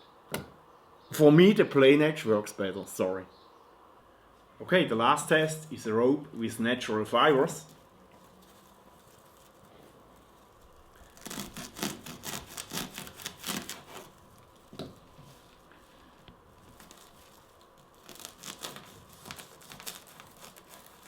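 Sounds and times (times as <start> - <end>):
knife cutting through rope: 8.2 - 15.7, 16.6 - 21.0.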